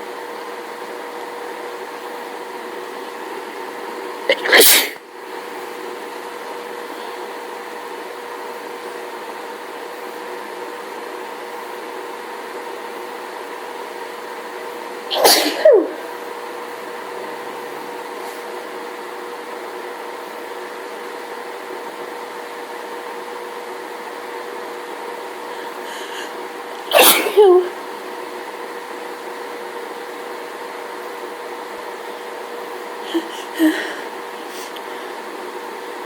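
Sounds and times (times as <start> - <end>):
steady background hum: 1.9 - 7.7, 14.8 - 20.4, 25.0 - 36.0
woman sneezing: 4.3 - 5.0, 15.1 - 16.1, 26.9 - 27.8, 33.0 - 34.8.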